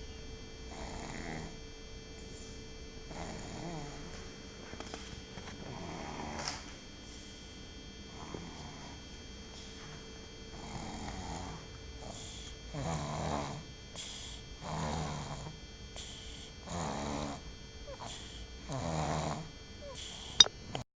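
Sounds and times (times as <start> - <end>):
baby snoring: 0.7 - 1.6, 3.1 - 4.1, 5.6 - 6.6, 10.6 - 20.3.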